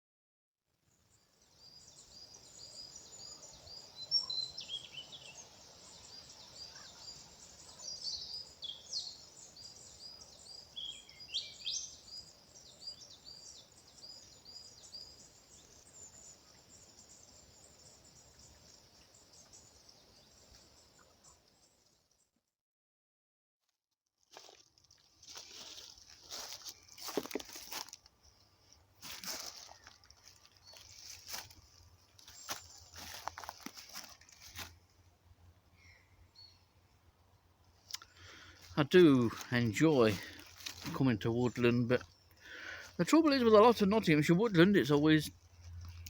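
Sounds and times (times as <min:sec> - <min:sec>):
birds singing: 0:01.1 - 0:21.8, 0:37.9 - 0:46.0.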